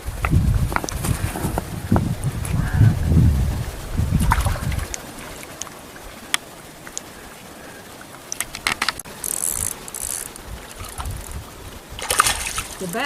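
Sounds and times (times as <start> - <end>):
wind rumble on microphone: 0.0 - 7.6, 8.5 - 13.0
clicks of gear being handled: 8.3 - 10.4.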